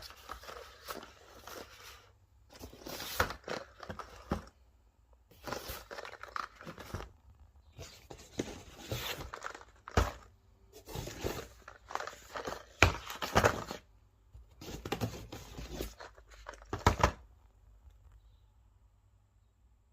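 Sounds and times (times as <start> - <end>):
cardboard packaging crinkling and tearing: 5.3 - 7.1, 7.9 - 13.8.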